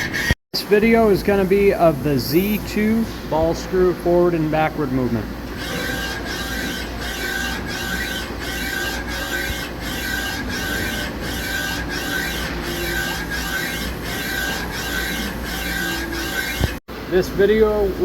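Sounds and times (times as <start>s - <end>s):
lathe slide mechanical whir: 5.4s - 16.8s.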